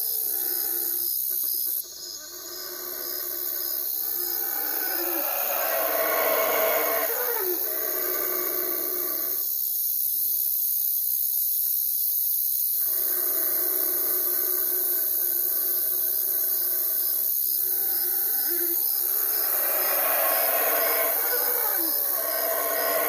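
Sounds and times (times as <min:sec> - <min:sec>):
constant high hiss: 0:00.0 - 0:23.0
owl call: 0:18.4 - 0:23.0.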